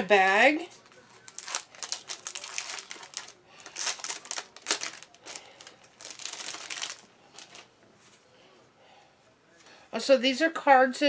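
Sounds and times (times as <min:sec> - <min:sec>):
plastic bag crinkling: 0:00.8 - 0:07.7.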